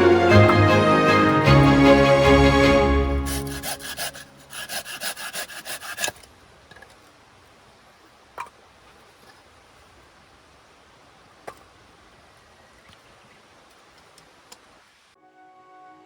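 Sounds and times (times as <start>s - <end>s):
background music: 0.0s - 4.6s, 15.2s - 16.0s
short rasping strokes: 3.2s - 6.2s.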